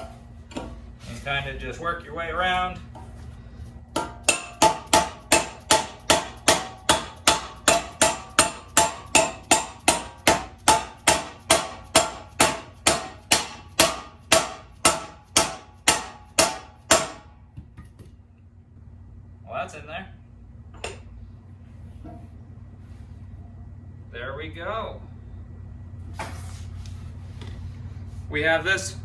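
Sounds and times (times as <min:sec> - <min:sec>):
mallet knocking on metal: 0:04.0 - 0:17.9.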